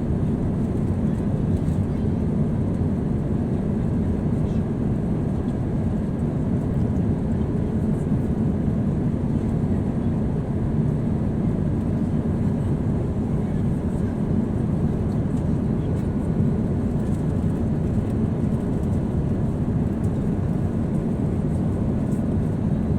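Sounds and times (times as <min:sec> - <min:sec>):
jet airliner cabin rumble: 0:00.0 - 0:22.9.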